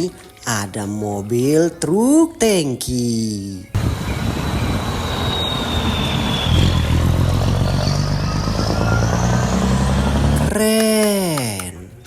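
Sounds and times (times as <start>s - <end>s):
low engine-like drone: 3.8s - 10.8s
faint high whistle: 4.0s - 7.0s.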